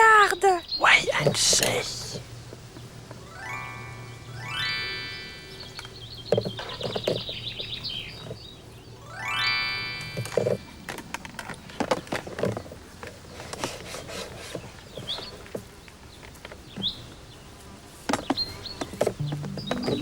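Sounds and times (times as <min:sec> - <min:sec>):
music: 0:03.2 - 0:05.8, 0:09.0 - 0:10.4, 0:19.2 - 0:20.0.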